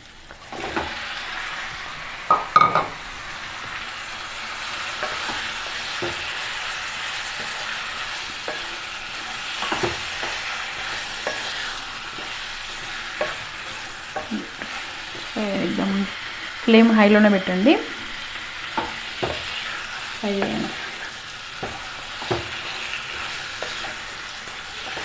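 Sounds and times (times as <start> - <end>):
chicken sizzling in a pan: 0.0 - 25.0
spoon knocking against pan: 2.3 - 3.0.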